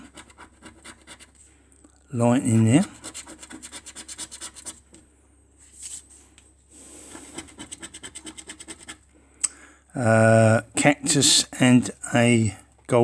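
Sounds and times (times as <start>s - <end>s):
scratchcard being scratched: 0.0s - 1.4s, 2.5s - 4.8s, 7.1s - 9.0s.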